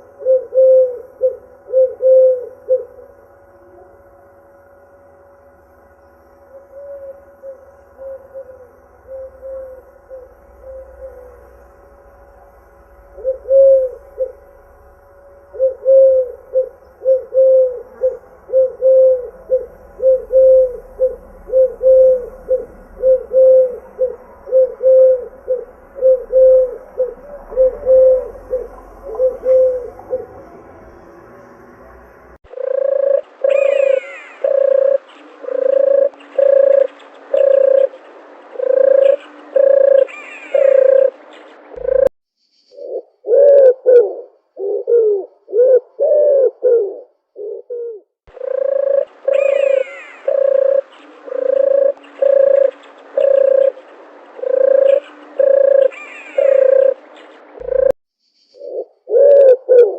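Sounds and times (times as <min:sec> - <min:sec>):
doves cooing: 0:00.0 - 0:04.1, 0:06.4 - 0:31.0, 0:32.5 - 0:42.1, 0:42.8 - 0:59.9
small birds chirping: 0:32.0 - 0:43.4, 0:48.4 - 0:59.2.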